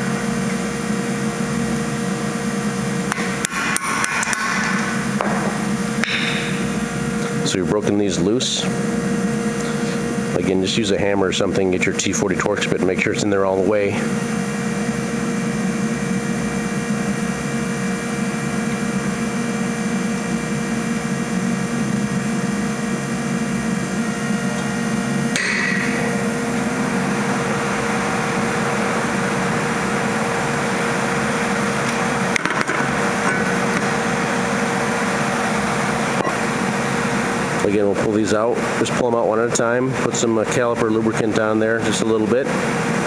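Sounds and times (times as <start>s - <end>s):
impact driver hammering: 3.1s - 6.6s, 25.3s - 26.1s.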